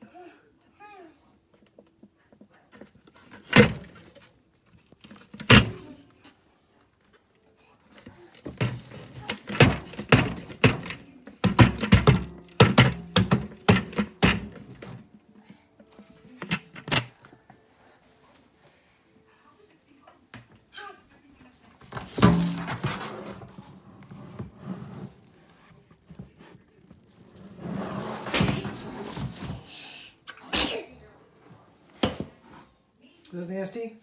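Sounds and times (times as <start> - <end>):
plastic vacuum cleaner knocks: 8.5 - 15.0.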